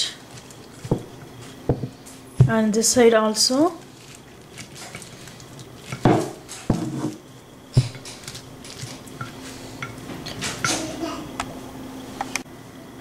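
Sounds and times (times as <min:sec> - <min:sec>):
rolling pin rolling on plastic wrap: 0:03.4 - 0:07.2.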